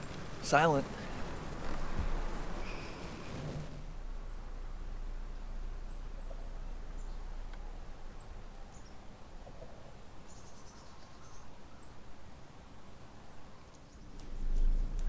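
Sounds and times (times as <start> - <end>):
low steady rumble: 0.0 - 10.2, 14.0 - 15.0
faint high wildlife chirps: 2.3 - 3.4, 4.2 - 12.1.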